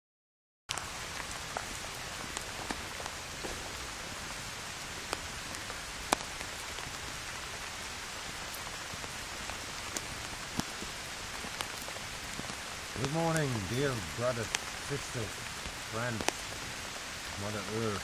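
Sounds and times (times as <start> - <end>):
sharp raindrop hits: 0.7 - 18.0
steady rain hiss: 0.7 - 18.0.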